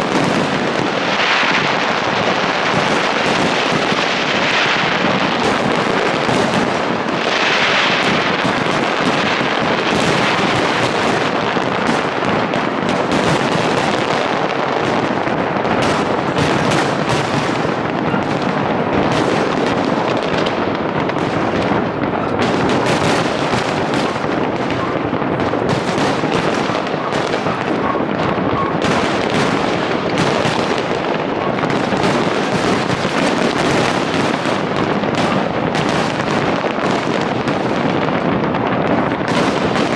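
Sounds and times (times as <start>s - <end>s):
fireworks bangs and crackles: 0.0s - 39.9s.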